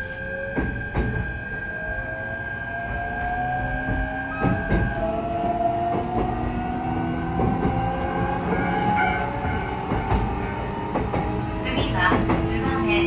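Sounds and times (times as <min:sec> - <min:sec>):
steady high tone: 0:00.0 - 0:06.5
electric train motor whine: 0:00.0 - 0:13.0
wheels clicking over rail joints: 0:03.9 - 0:13.0.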